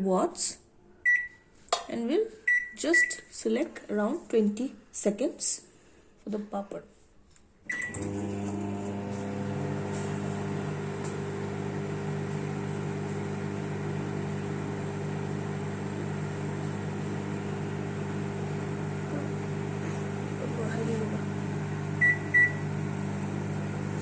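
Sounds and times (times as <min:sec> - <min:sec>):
microwave beep: 0:01.0 - 0:01.4, 0:02.5 - 0:03.3, 0:07.7 - 0:14.6, 0:21.6 - 0:23.9
microwave humming with fan: 0:07.7 - 0:24.0.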